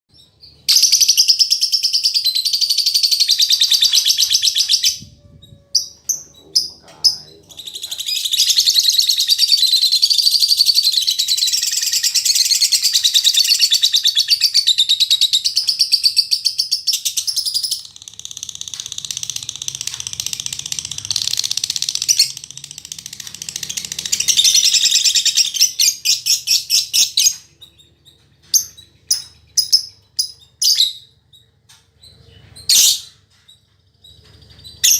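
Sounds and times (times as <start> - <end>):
lovebird chattering: 0.9 - 27.9.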